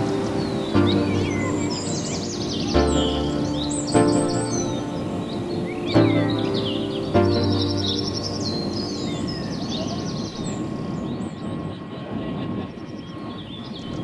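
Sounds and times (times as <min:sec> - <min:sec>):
background music chord: 0:00.0 - 0:10.2
bird chirps: 0:00.0 - 0:11.2.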